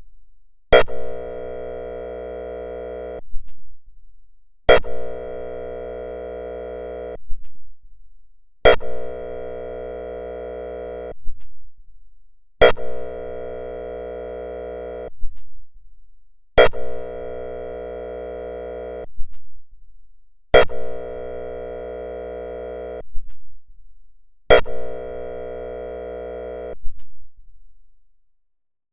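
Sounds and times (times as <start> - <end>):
air horn blasts: 0.8 - 3.2, 4.8 - 7.2, 8.7 - 11.2, 12.6 - 15.1, 16.6 - 19.1, 20.6 - 23.0, 24.5 - 26.8.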